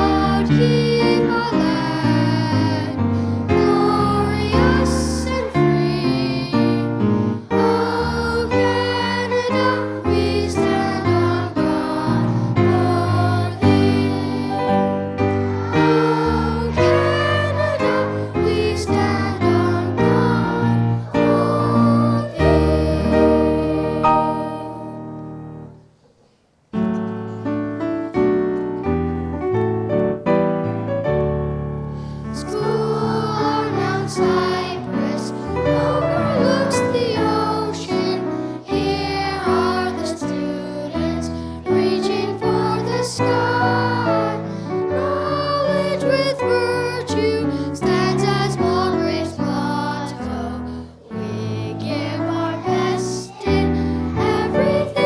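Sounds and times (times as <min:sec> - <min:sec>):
young voices singing: 0:00.0 - 0:25.8, 0:32.2 - 0:55.0
piano playing: 0:00.0 - 0:26.0, 0:26.8 - 0:55.0.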